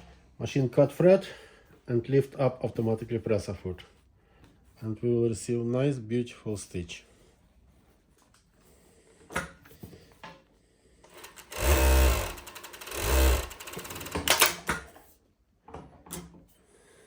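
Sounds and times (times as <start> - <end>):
industrial sewing machine stitching: 11.1 - 14.7.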